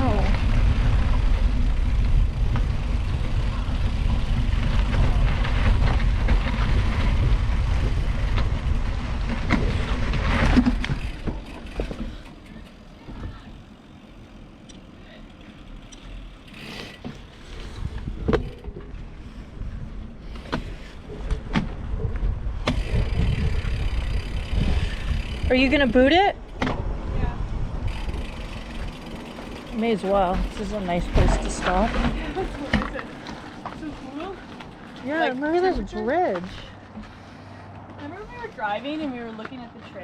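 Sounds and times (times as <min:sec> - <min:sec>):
bike riding rumble: 0:00.0 - 0:40.0
wind on microphone: 0:17.5 - 0:29.2.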